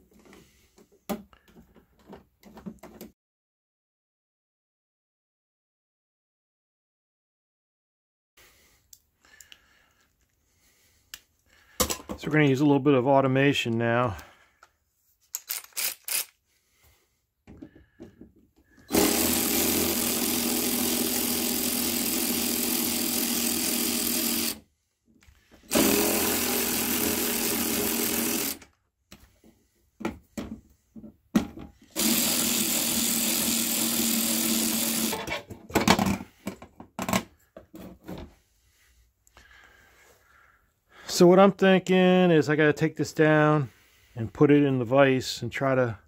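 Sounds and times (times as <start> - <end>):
electric drill running: 18.8 - 24.6, 25.7 - 28.6, 31.9 - 35.3.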